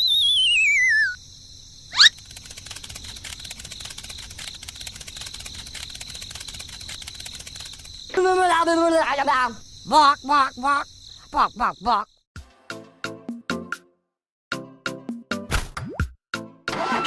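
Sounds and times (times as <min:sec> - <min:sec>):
wavering whistle sliding down: 0:00.0 - 0:01.2
chirring insect chorus: 0:00.0 - 0:12.3.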